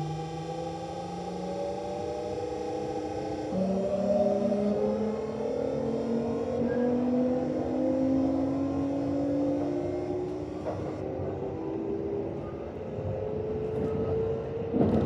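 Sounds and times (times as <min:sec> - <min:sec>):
train inverter whining: 0:00.0 - 0:15.0
train running rumble: 0:10.3 - 0:15.0.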